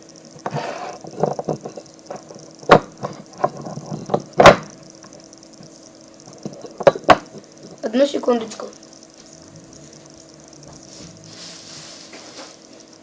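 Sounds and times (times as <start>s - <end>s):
loud sharp wooden knocks: 4.1s - 4.7s.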